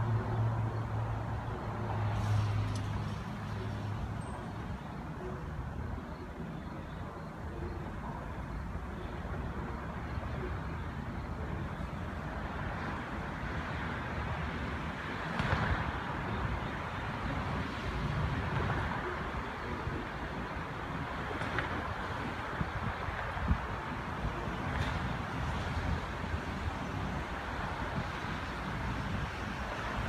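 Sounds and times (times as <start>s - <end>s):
vehicle rumble with hiss: 0.0s - 30.0s.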